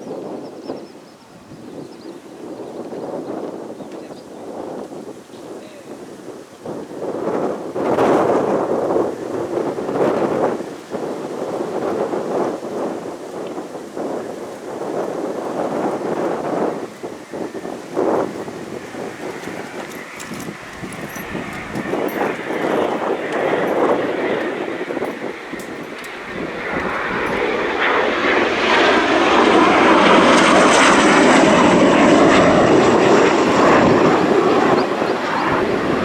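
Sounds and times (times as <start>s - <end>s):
jet engines rushing: 5.9s - 36.0s
high turbine whine: 8.3s - 36.0s.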